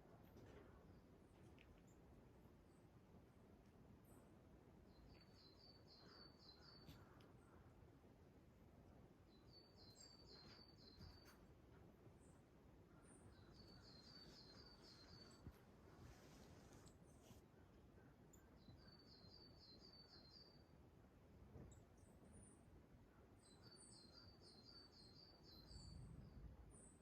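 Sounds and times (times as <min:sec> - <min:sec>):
faint outdoor hiss: 0:00.0 - 0:27.0
small songbird singing: 0:04.9 - 0:07.8, 0:09.2 - 0:11.4, 0:12.2 - 0:17.2, 0:18.3 - 0:20.8, 0:23.4 - 0:27.0.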